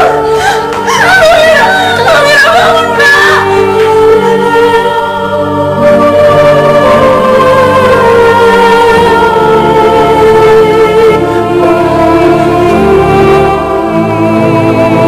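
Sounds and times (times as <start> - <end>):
wordless wailing voice: 0.0 - 3.8
sad background music: 0.0 - 15.0.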